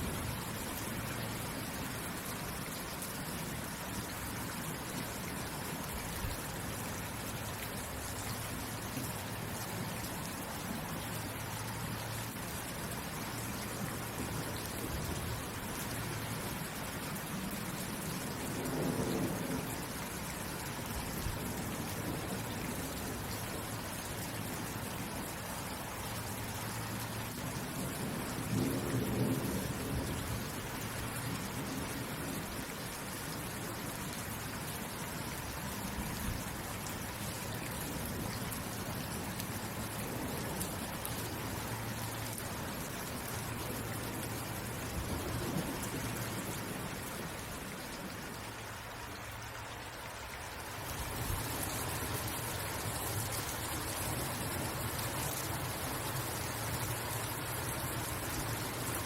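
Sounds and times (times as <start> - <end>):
steady rain: 0.0 - 59.0.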